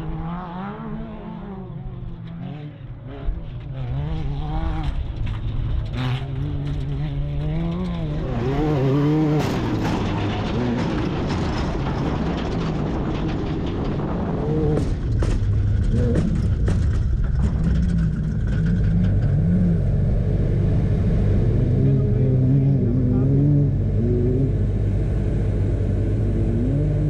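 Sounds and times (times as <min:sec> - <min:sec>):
race vehicle engine revving: 0:00.0 - 0:12.6, 0:15.7 - 0:27.0
sharp knocks and rattles: 0:04.8 - 0:20.6.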